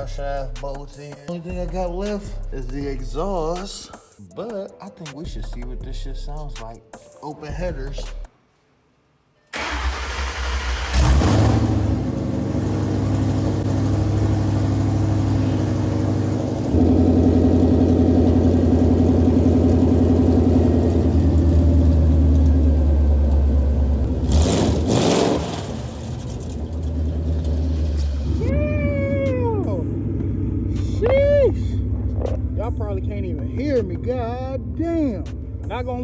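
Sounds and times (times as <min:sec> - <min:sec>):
loud car engine revving and idling: 0:09.7 - 0:36.0.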